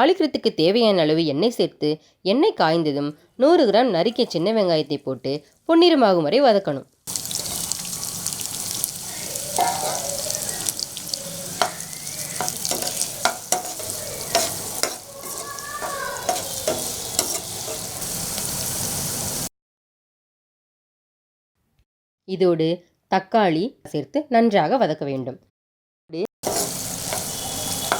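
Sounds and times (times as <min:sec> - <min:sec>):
spatula scraping a pan: 0:07.1 - 0:18.8, 0:26.4 - 0:27.9
onions sizzling in hot oil: 0:07.1 - 0:19.5, 0:26.4 - 0:27.9.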